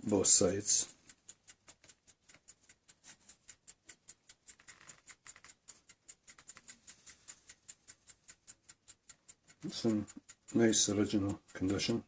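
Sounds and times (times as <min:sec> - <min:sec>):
clock ticking: 0:00.0 - 0:12.0.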